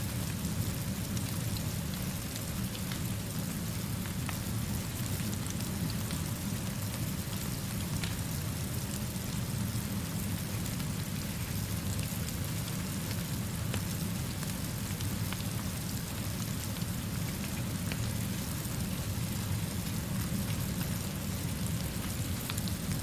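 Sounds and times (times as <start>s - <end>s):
gentle fire crackling: 0.0s - 23.0s
steady rainfall: 0.0s - 23.0s.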